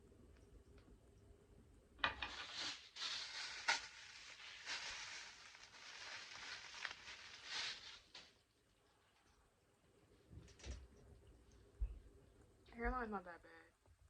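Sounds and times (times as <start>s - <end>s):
rustling and scratching of wig: 2.1s - 9.3s.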